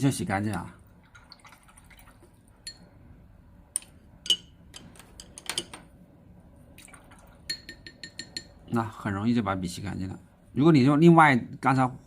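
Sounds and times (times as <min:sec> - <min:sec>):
small water splashes: 0:01.0 - 0:02.4.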